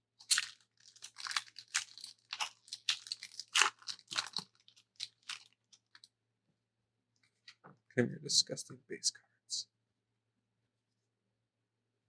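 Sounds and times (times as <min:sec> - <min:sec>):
foil wrapper crinkling: 0:00.2 - 0:06.1.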